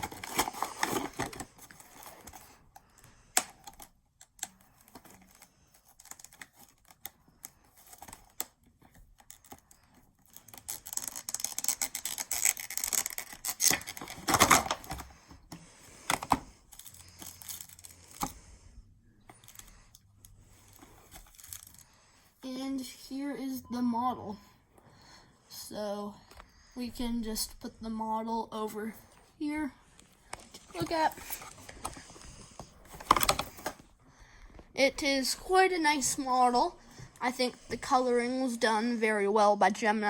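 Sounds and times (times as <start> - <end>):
cardboard packaging handled: 0.0 - 2.6, 7.7 - 18.4, 20.5 - 21.8, 30.4 - 33.9
rustling and scraping: 0.0 - 2.8, 12.3 - 22.3, 29.9 - 34.0.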